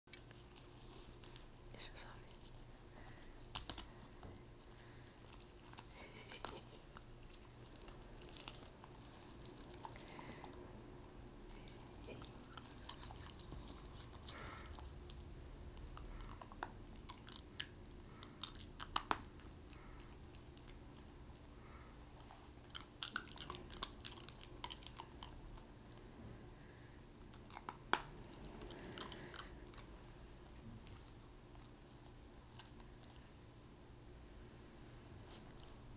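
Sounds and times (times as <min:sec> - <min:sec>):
dog teeth crunching lozenge: 0:03.4 - 0:10.6, 0:11.5 - 0:21.5, 0:22.1 - 0:25.7, 0:27.2 - 0:30.1.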